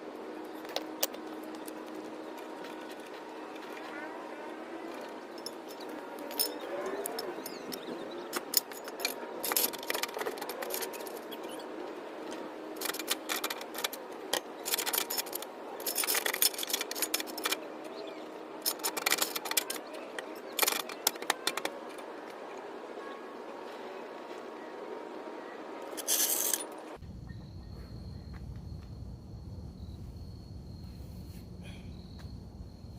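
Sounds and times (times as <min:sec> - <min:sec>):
hand tools clinking and scraping: 0:00.5 - 0:22.5, 0:25.9 - 0:27.0.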